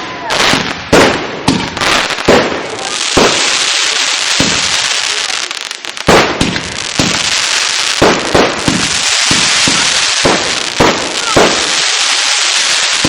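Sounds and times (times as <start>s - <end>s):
fireworks hissing: 0.0s - 13.0s
firework shells banging: 6.0s - 11.8s.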